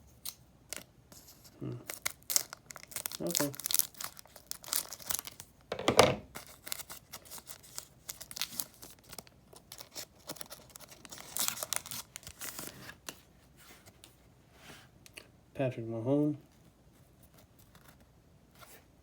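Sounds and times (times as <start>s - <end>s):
foil wrapper crinkling: 0.7s - 5.5s, 6.3s - 13.1s.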